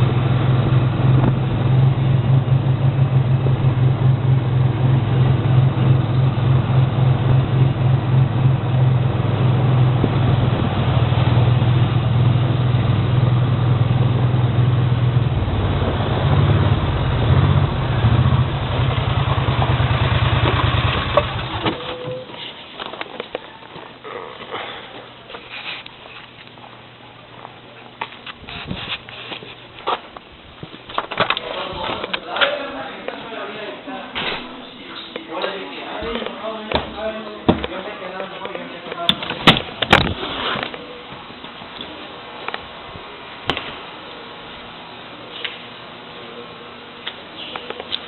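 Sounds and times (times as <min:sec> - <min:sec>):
machine pulsing hum: 0:00.0 - 0:22.4.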